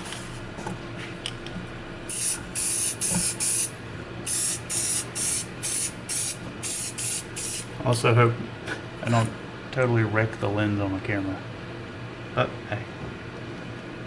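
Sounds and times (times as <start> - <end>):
spray can hissing bursts: 2.1 - 3.7, 4.3 - 7.7.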